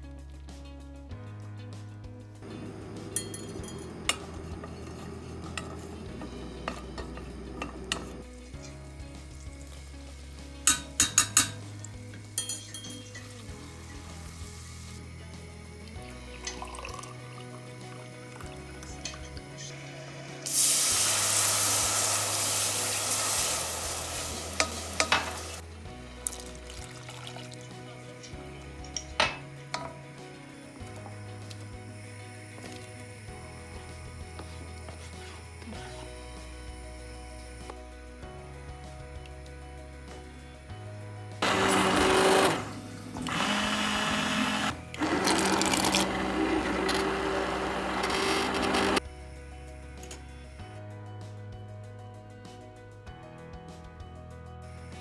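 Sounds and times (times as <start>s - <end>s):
utensil knocking against pot: 10.7s - 11.6s
food sizzling in hot fat: 13.1s - 15.2s, 20.1s - 25.6s
blender motor running: 21.0s - 25.6s, 41.4s - 49.0s.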